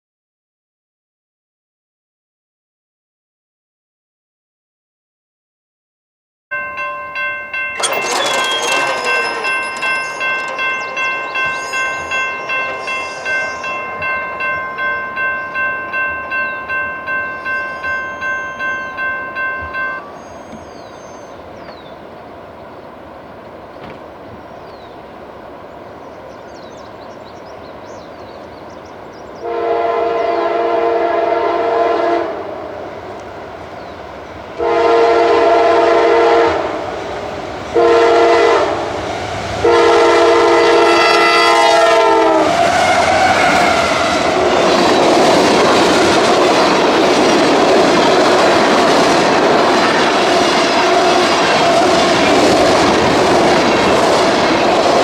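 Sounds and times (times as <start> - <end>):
train rumble: 6.6 - 55.0
wheel clatter: 7.7 - 12.5
locomotive air horn blasts: 29.4 - 32.7, 34.6 - 36.8, 37.8 - 39.0, 39.6 - 44.3.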